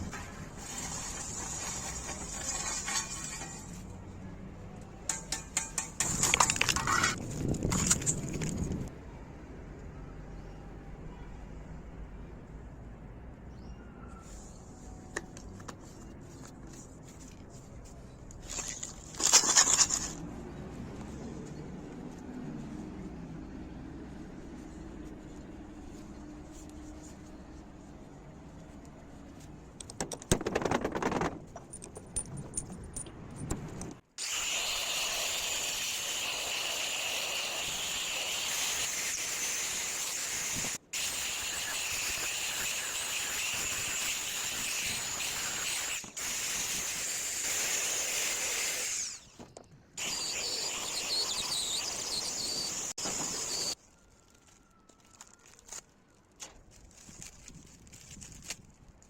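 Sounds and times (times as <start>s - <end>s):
scraping and knocks: 0.0s - 3.9s
power tool grinding metal: 34.2s - 49.2s, 50.0s - 53.8s.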